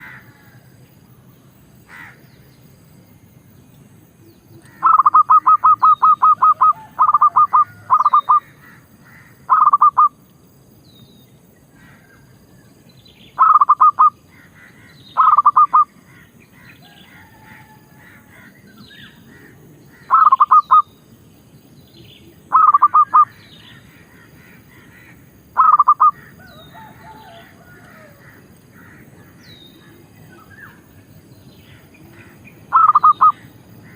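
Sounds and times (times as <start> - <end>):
dove cooing in staccato notes: 4.6 - 10.1, 13.4 - 16.2, 19.3 - 20.8, 22.5 - 30.1, 32.0 - 33.9
faint small bird chirps: 22.0 - 23.8, 25.6 - 26.6, 32.1 - 33.4.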